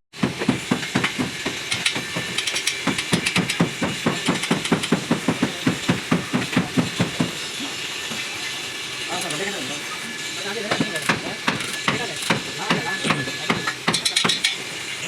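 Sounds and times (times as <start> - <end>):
hammer striking metal: 0.2 - 7.4.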